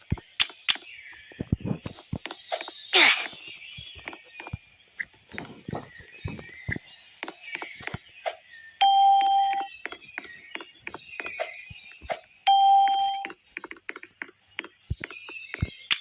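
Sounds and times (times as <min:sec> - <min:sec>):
long electronic beeps: 0:08.8 - 0:09.8, 0:12.5 - 0:13.3
short clicks and chirps: 0:08.8 - 0:16.0.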